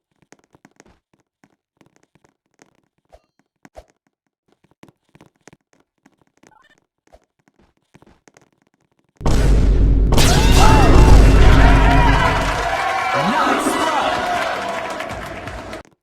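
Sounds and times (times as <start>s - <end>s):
loud comedic sound effect: 9.2s - 15.8s.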